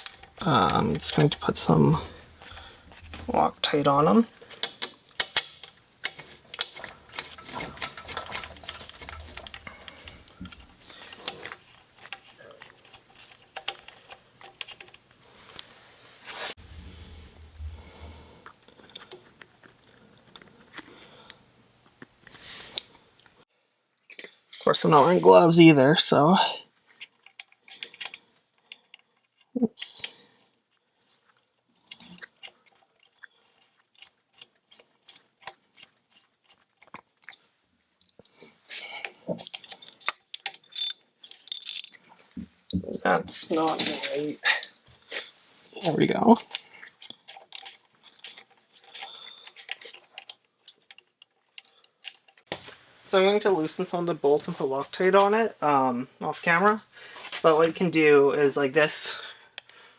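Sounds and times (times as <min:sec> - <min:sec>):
metal parts and tools clinking: 0:00.0 - 0:15.0, 0:39.3 - 0:42.2, 0:43.5 - 0:44.4.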